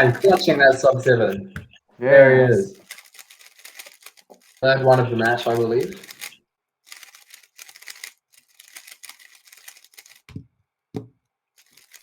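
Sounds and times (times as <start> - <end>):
rapid plastic clicking: 2.8 - 10.4, 11.6 - 12.0.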